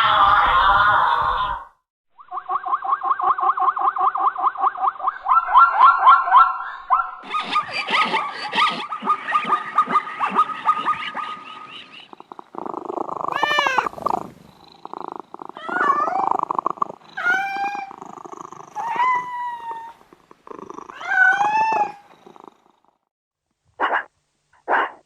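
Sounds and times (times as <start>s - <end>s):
cat purring: 12.0s - 23.1s
cat meowing: 13.3s - 14.1s, 15.5s - 18.1s, 18.7s - 20.1s, 20.8s - 22.1s.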